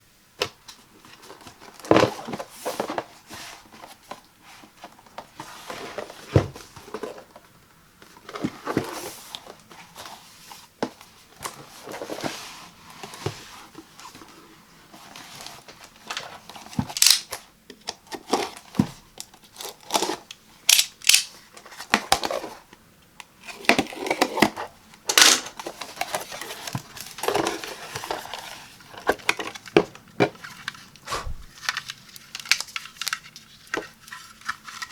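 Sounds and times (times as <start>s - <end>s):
cardboard and plastic packaging crinkling: 23.4s - 34.9s.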